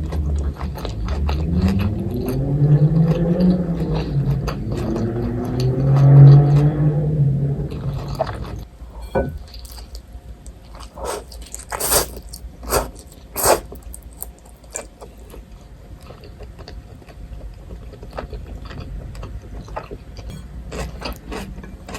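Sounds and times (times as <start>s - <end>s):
low steady hum: 7.2s - 18.1s
person crunching and chewing: 9.0s - 10.0s, 10.8s - 15.4s, 16.0s - 21.9s.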